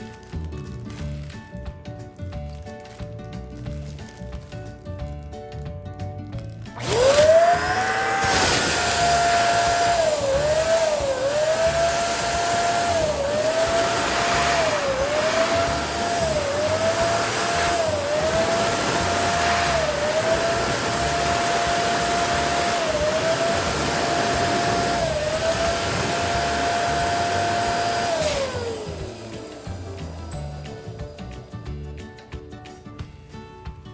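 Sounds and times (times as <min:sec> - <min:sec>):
electric balloon pump whirring: 0:06.3 - 0:31.8.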